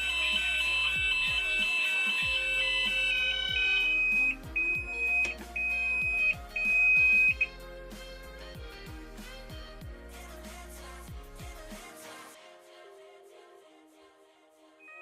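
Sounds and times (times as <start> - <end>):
fire alarm tones: 0.0 - 7.5
high pulsing alarm tone: 0.0 - 7.5
pop music: 0.0 - 15.0.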